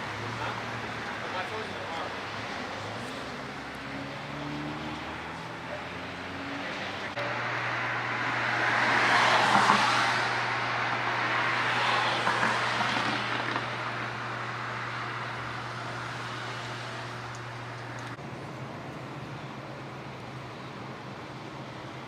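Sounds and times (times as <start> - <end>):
car passing by: 1.2 - 17.3.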